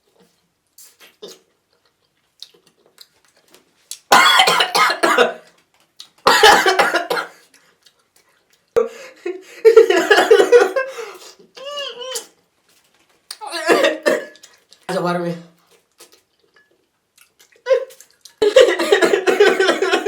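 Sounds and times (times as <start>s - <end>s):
person coughing: 4.1s - 5.4s, 6.3s - 7.4s, 9.9s - 11.0s, 13.5s - 14.4s, 18.4s - 20.0s.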